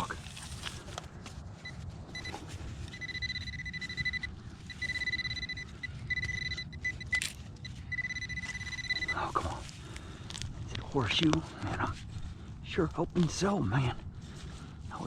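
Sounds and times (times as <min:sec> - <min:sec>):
metal detector beeping: 0:01.6 - 0:09.6.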